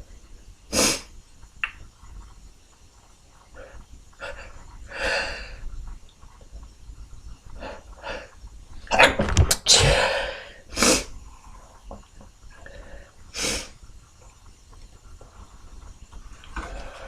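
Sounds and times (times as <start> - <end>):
person sniffing: 0.7 - 1.1, 9.7 - 11.2, 13.3 - 13.7
person sneezing: 9.7 - 11.1.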